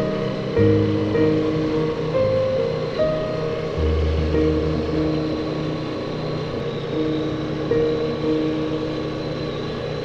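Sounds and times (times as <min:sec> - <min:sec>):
music of sustained chords: 0:00.0 - 0:10.0.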